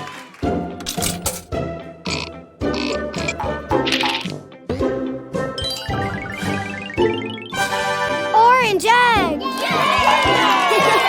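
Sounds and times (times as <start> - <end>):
cartoon background music: 0.0 - 11.0
tinkling chime-like rising run: 5.6 - 7.9.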